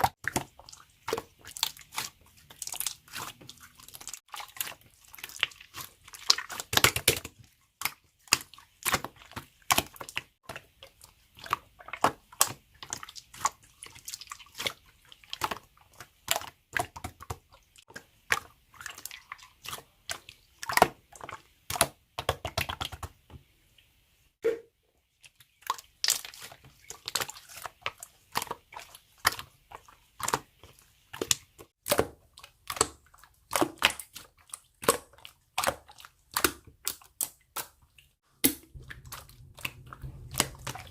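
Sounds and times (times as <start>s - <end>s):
slime popping and crackling: 38.4s - 40.9s.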